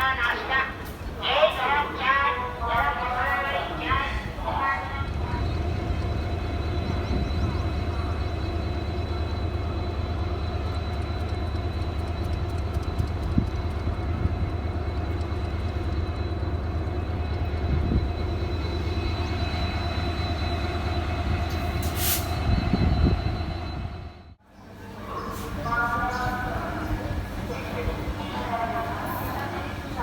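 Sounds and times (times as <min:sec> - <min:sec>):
train rail rumble: 0:00.0 - 0:30.0
train knocks: 0:10.2 - 0:19.0.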